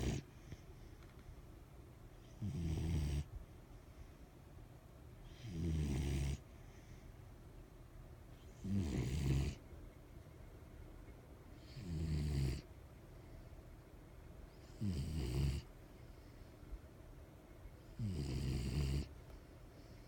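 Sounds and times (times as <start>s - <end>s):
dog snoring: 0.0s - 0.6s, 2.2s - 3.3s, 5.2s - 6.5s, 8.4s - 9.6s, 11.6s - 12.7s, 14.5s - 15.7s, 17.8s - 19.2s.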